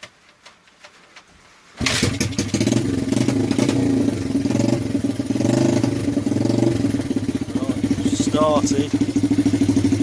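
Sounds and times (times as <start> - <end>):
motorcycle engine idling: 2.2 - 10.0.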